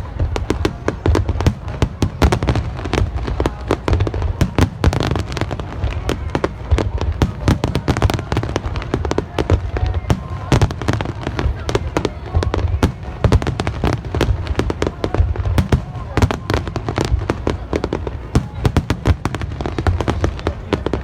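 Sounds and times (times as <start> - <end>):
fireworks exploding: 0.0 - 21.0.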